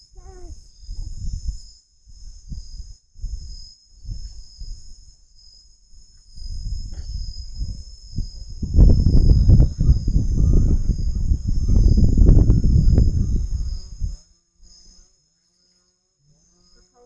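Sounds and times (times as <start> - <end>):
insects chorus: 0.0 - 17.0
low thumps and rumbles: 6.4 - 14.1.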